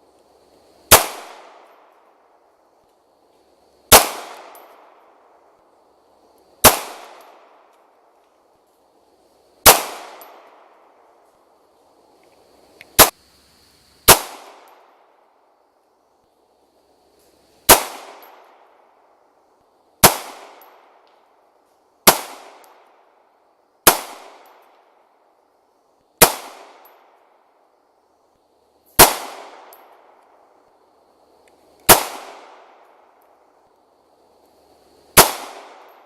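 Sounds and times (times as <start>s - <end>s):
gunshots echoing: 0.9s - 1.7s, 3.9s - 4.8s, 6.6s - 7.4s, 9.6s - 10.4s, 20.0s - 20.6s, 22.1s - 22.6s, 23.8s - 24.5s, 29.0s - 29.8s, 31.9s - 32.7s, 35.2s - 36.0s.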